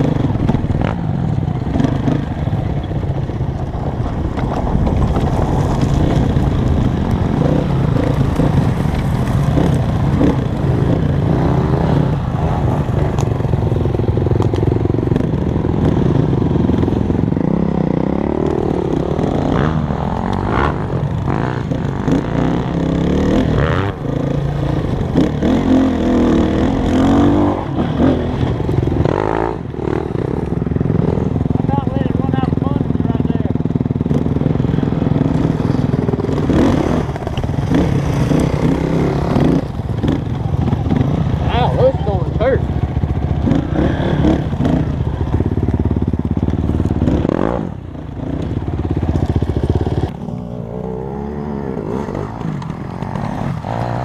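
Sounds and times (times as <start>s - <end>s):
dirt bike engine revving: 0.0s - 54.0s.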